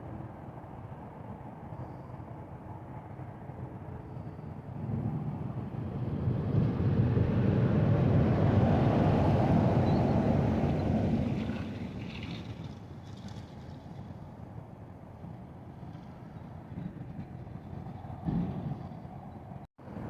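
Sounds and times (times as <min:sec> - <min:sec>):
vehicle passing by rumble: 0:04.8 - 0:14.6.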